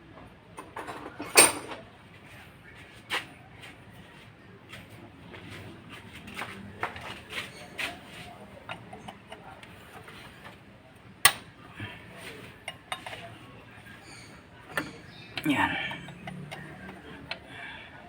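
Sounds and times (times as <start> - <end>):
hand tools clinking on metal: 0.7 - 1.8.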